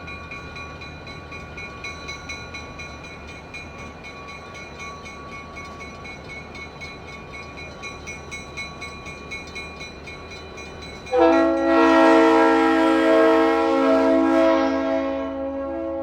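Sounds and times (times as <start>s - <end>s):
train rumbling by: 0.0s - 16.0s
loud train horn chord: 11.1s - 16.0s.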